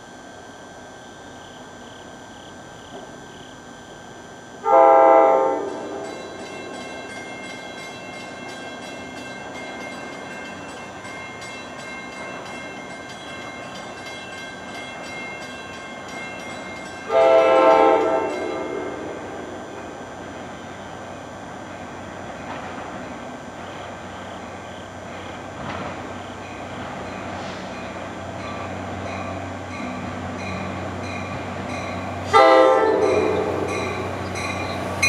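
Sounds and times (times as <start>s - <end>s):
train rumbling by: 1.2s - 35.0s
train air horn blasts: 4.6s - 6.1s, 17.1s - 19.5s, 32.2s - 34.1s.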